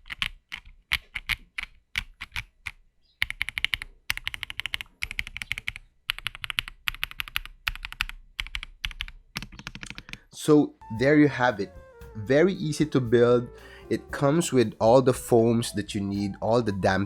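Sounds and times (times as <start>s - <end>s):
mechanical keyboard typing: 0.0s - 10.3s.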